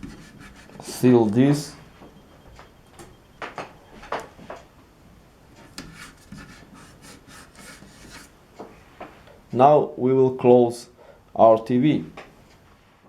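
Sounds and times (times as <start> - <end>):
rubbing and scraping: 0.0 - 1.7, 5.6 - 8.4.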